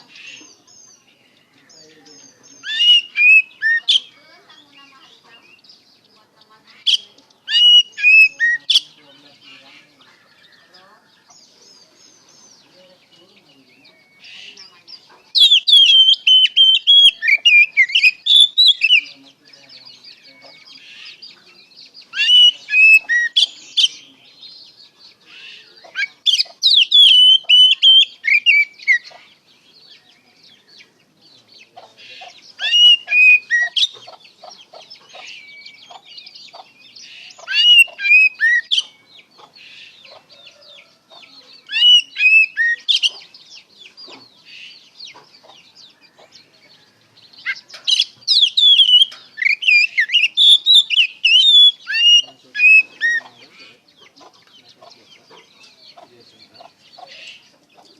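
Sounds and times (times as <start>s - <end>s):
bird singing whistled phrases: 2.6s - 4.2s, 6.9s - 8.9s, 15.4s - 19.1s, 21.0s - 24.0s, 25.3s - 29.1s, 32.6s - 34.0s, 37.4s - 39.0s, 41.6s - 43.1s, 47.4s - 53.0s.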